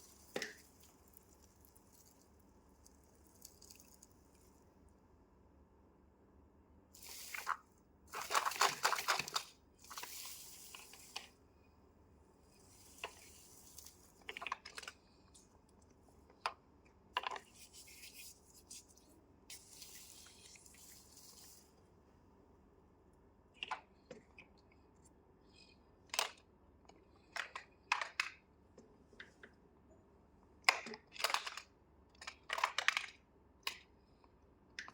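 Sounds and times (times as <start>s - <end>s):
rustling and crinkling: 0.0s - 4.8s, 7.0s - 11.4s, 12.4s - 16.3s, 17.2s - 21.9s.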